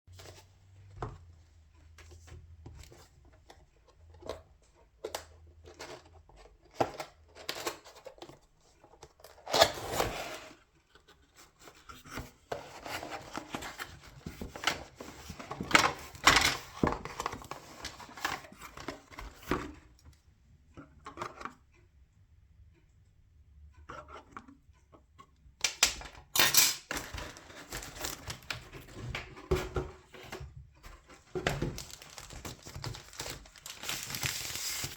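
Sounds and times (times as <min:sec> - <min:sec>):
packaging rustling: 0:26.8 - 0:29.3, 0:31.1 - 0:34.9.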